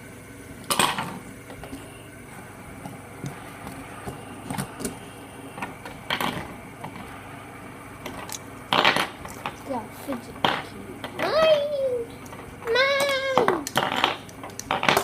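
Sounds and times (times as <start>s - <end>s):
fidget spinners whirring: 0.0s - 15.0s
small clicks and taps: 13.0s - 15.0s.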